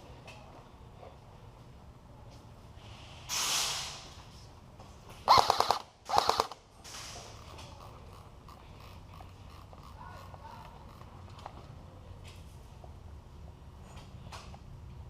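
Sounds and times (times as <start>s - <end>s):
brief hiss: 2.8s - 4.2s
airsoft guns full-auto bursts: 5.3s - 6.6s.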